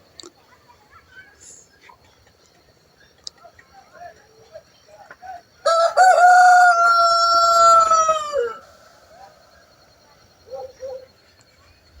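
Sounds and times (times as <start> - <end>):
rooster crowing: 5.6 - 9.4.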